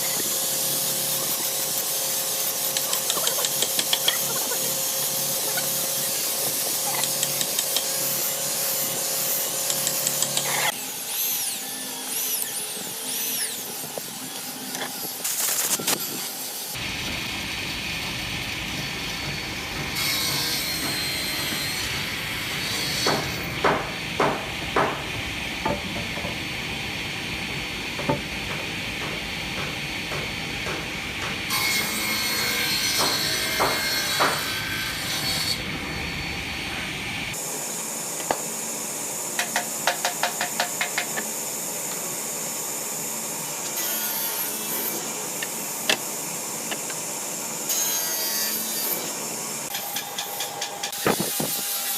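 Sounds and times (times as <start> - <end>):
sharp knocks: 23.1 - 26.4.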